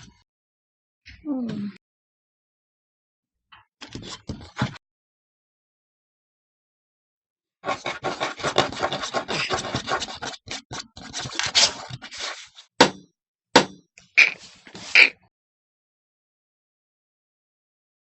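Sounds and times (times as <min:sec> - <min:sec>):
rubbing and scraping: 0:07.6 - 0:12.7, 0:14.2 - 0:15.1.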